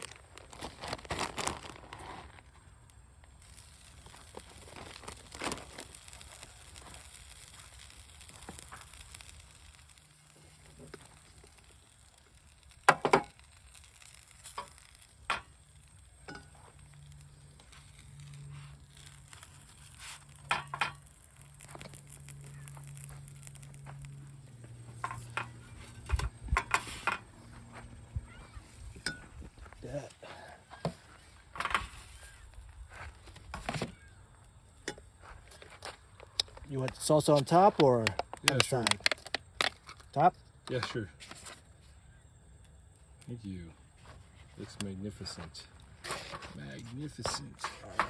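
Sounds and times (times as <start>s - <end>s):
food sizzling in a pan: 3.4s - 29.2s.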